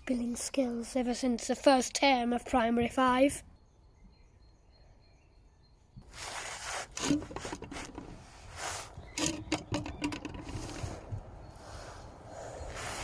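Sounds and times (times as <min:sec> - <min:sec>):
rough rubbing and scraping: 0:06.0 - 0:13.0.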